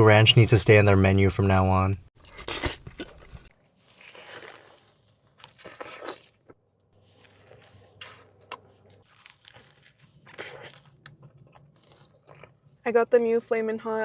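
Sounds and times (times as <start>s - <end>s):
crunchy bites and chewing: 2.2s - 12.8s
tearing or crinkling: 2.4s - 11.0s.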